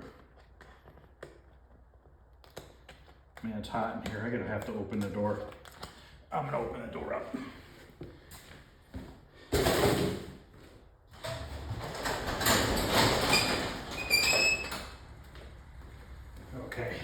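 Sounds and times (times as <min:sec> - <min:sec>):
garage door clatter: 0:09.6 - 0:10.4, 0:11.1 - 0:16.4
garage door rumbling: 0:11.1 - 0:17.0.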